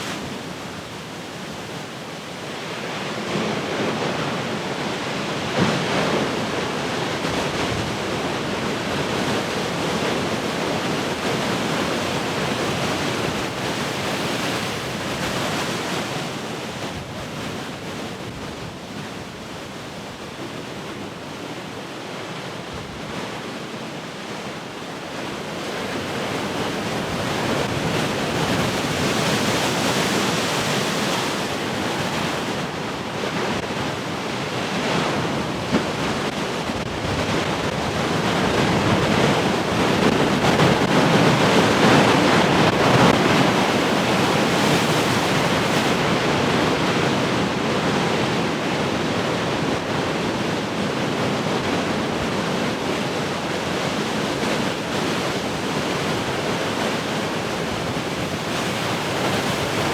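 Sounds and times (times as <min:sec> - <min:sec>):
ocean waves breaking: 0:25.4 - 0:59.9.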